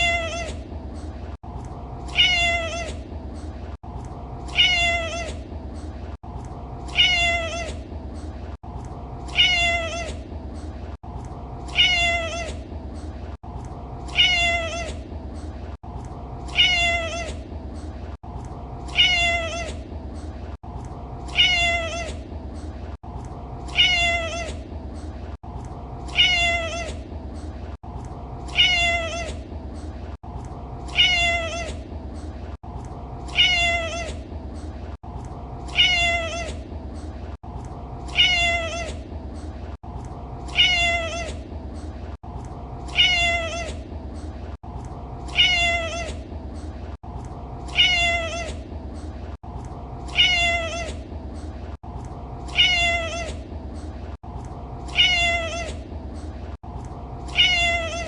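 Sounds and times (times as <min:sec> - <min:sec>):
cat meowing: 0:00.0 - 0:00.6, 0:02.1 - 0:03.0, 0:04.5 - 0:05.4, 0:06.9 - 0:07.8, 0:09.3 - 0:10.2, 0:11.7 - 0:12.6, 0:14.1 - 0:15.0, 0:16.5 - 0:17.4, 0:18.9 - 0:19.8, 0:21.3 - 0:22.2, 0:23.7 - 0:24.6, 0:26.1 - 0:27.0, 0:28.5 - 0:29.4, 0:30.9 - 0:31.8, 0:33.3 - 0:34.2, 0:35.7 - 0:36.6, 0:38.1 - 0:39.0, 0:40.5 - 0:41.4, 0:42.9 - 0:43.8, 0:45.3 - 0:46.2, 0:47.7 - 0:48.6, 0:50.1 - 0:51.0, 0:52.5 - 0:53.4, 0:54.9 - 0:55.8, 0:57.3 - 0:58.0.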